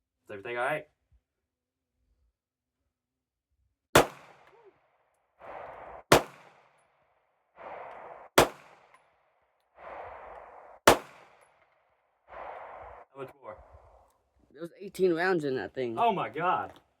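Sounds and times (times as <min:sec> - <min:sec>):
pistol shots: 0:04.0 - 0:04.6, 0:06.0 - 0:06.8, 0:08.3 - 0:09.0, 0:10.8 - 0:11.6
brief rushing noise: 0:12.3 - 0:14.0.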